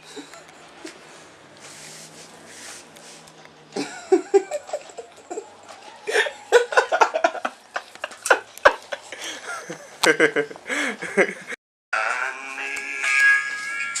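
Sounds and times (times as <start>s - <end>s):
people laughing and giggling: 3.8s - 11.6s.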